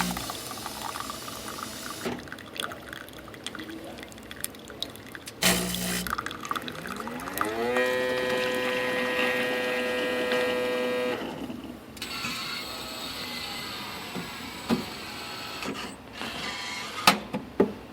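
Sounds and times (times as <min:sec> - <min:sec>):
coffee machine motor whine: 0:00.0 - 0:02.1, 0:05.4 - 0:06.2, 0:07.1 - 0:17.0
quiet machine whir: 0:00.0 - 0:02.3, 0:06.8 - 0:17.3.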